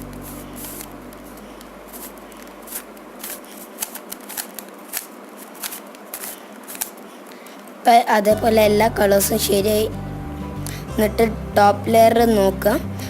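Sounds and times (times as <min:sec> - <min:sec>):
plastic puzzle cube clicking: 0:02.4 - 0:07.0.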